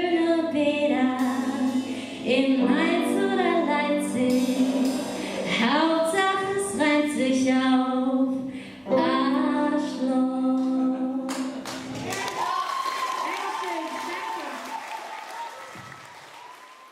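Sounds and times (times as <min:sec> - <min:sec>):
woman singing: 0:00.0 - 0:11.6.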